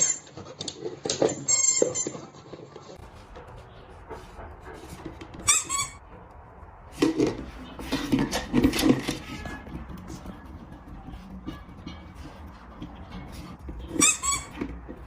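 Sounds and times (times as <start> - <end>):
dog chew toy squeaking: 0.0 - 0.4, 5.4 - 6.0, 13.0 - 15.0.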